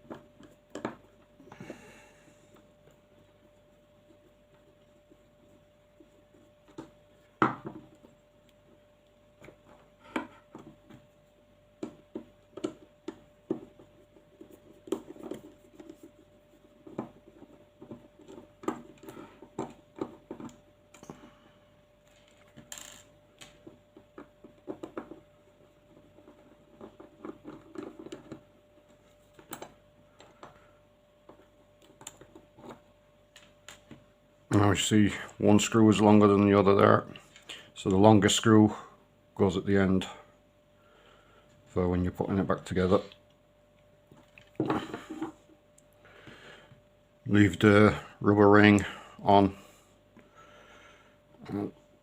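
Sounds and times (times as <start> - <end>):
faint steady hum: 0.0 - 52.0.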